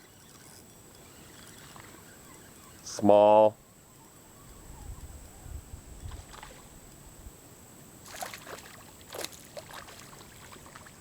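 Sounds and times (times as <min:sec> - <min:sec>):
water splashing in a creek: 0:06.1 - 0:06.8, 0:08.0 - 0:11.0.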